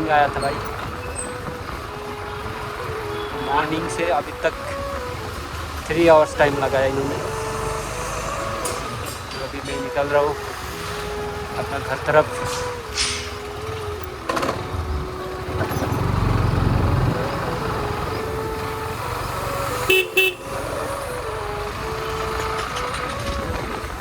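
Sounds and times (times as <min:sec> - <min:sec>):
faint tune of held notes: 0:00.0 - 0:24.0
traffic rumble: 0:00.0 - 0:24.0
vehicle horn honking: 0:19.8 - 0:21.0.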